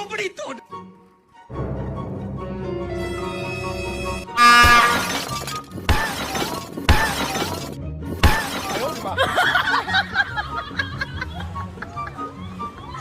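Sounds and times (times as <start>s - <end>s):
background music: 0.0s - 13.0s
shattering crash with deep thump: 4.4s - 9.2s.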